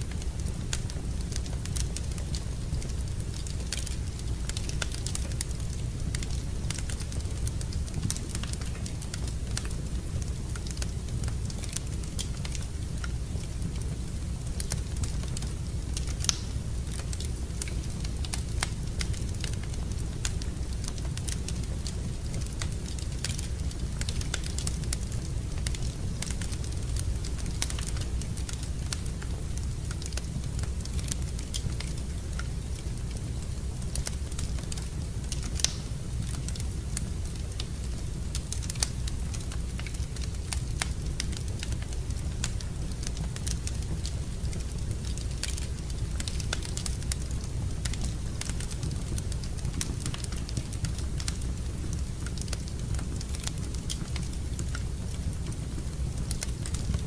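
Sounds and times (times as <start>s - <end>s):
low fire rumble: 0.0s - 57.0s
wood fire crackling and popping: 0.0s - 57.0s
sharp pops of fire: 15.9s - 20.4s, 34.1s - 37.8s.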